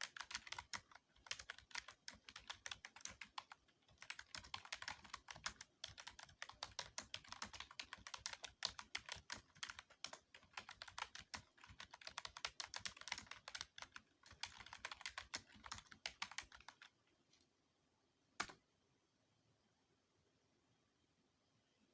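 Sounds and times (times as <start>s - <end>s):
fast typing on keyboard: 0.0s - 17.0s.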